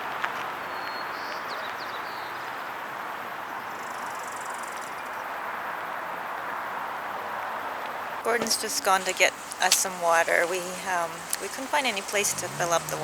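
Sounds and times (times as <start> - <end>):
vehicle road noise: 6.7 - 13.0.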